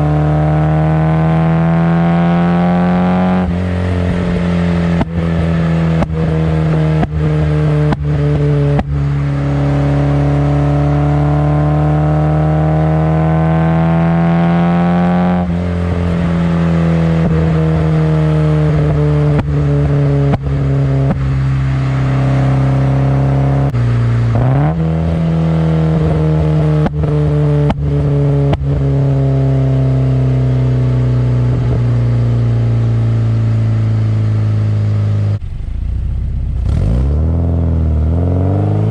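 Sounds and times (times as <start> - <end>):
car engine revving under load: 0.0 - 38.9
sharp exhaust cracks: 31.2 - 38.9.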